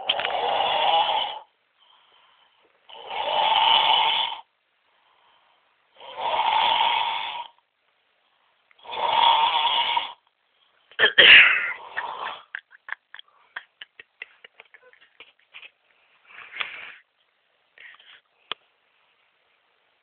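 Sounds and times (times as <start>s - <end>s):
loud snoring: 0.0s - 1.5s, 2.9s - 4.5s, 6.0s - 7.6s, 8.8s - 10.2s, 11.8s - 12.5s.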